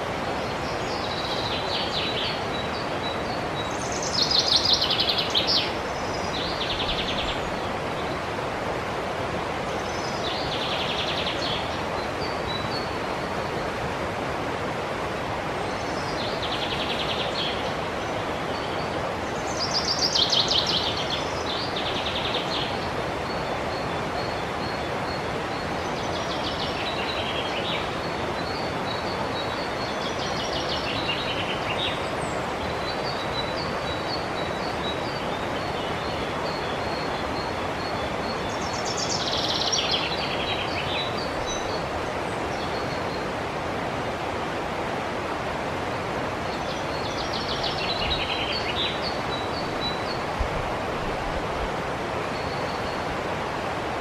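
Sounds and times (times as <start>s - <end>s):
songbirds trilling: 0.0s - 8.6s, 15.2s - 51.1s
river rushing: 0.0s - 54.0s.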